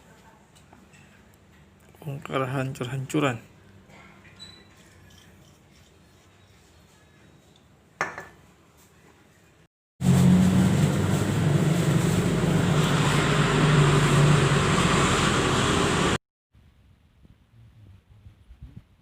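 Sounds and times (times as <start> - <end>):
washing machine motor humming: 10.0 - 16.2.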